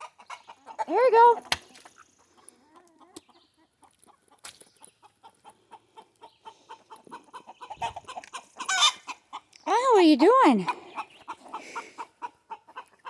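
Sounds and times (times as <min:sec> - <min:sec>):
hens clucking softly: 0:00.0 - 0:09.6, 0:10.6 - 0:13.0.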